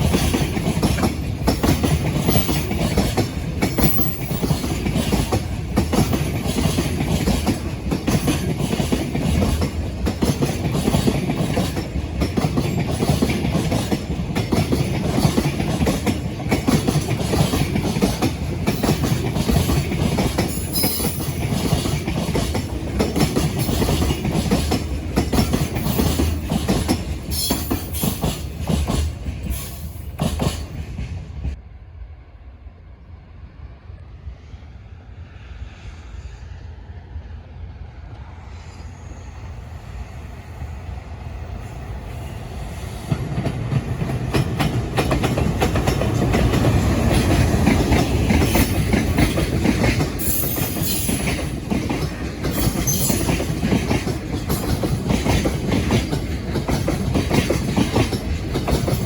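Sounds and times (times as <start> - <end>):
freight wagons clattering over rail joints: 0.0 - 31.2, 43.4 - 59.0.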